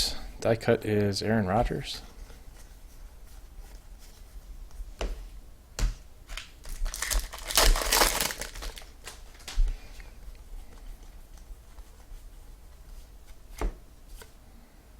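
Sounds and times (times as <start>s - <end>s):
foil wrapper crinkling: 6.4s - 9.6s.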